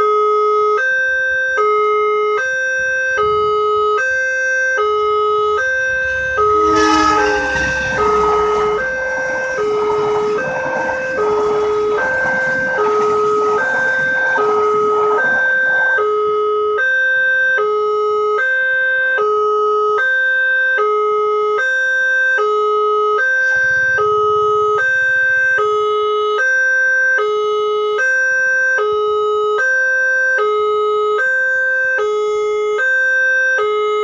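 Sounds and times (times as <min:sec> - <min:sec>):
level crossing two-tone siren: 0:00.1 - 0:34.0
faint low rumble: 0:04.8 - 0:17.1, 0:23.3 - 0:27.2.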